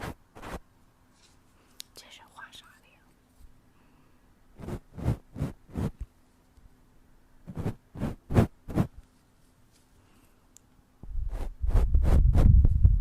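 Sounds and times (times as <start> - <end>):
brushes scrubbing a microphone: 0.0 - 0.6, 7.5 - 9.0.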